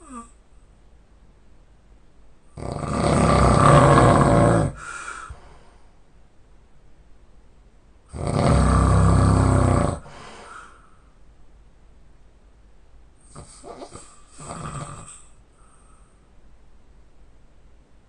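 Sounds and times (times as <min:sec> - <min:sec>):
person snoring loudly: 0:02.6 - 0:05.0, 0:08.1 - 0:10.2, 0:13.3 - 0:15.3
short quiet breath: 0:04.8 - 0:06.0, 0:10.1 - 0:11.2, 0:15.1 - 0:16.3.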